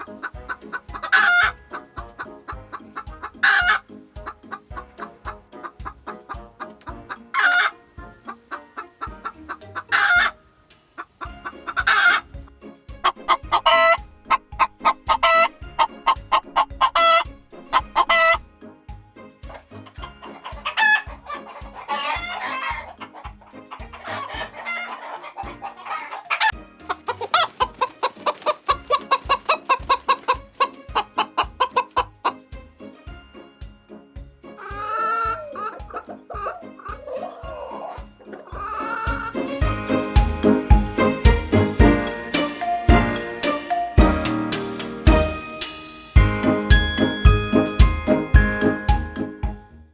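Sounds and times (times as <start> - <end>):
chickens clucking and squawking: 0.0 - 10.4, 11.0 - 12.3, 13.0 - 18.4, 19.5 - 32.4, 34.6 - 42.8
steady low beat: 39.1 - 49.7.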